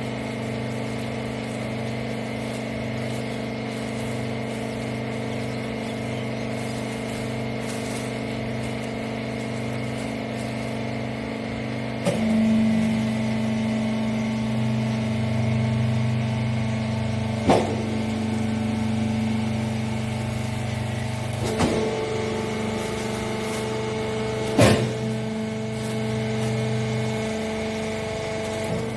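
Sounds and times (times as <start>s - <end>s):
hydraulic power unit humming: 0.0s - 28.9s
sharp machine clunk: 24.5s - 25.1s.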